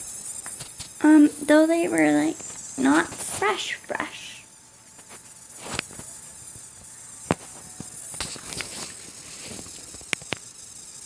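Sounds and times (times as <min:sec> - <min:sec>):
steady high hiss: 0:00.0 - 0:11.0.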